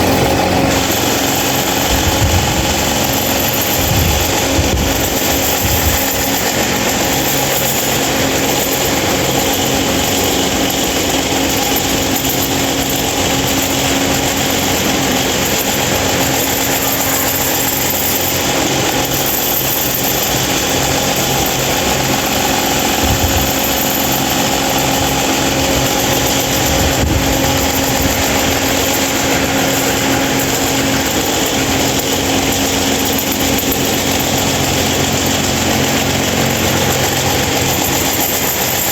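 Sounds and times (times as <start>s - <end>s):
rush of air from fan: 0.0s - 6.8s, 22.4s - 23.9s, 24.8s - 33.0s
electric fan motor hum: 0.0s - 38.9s.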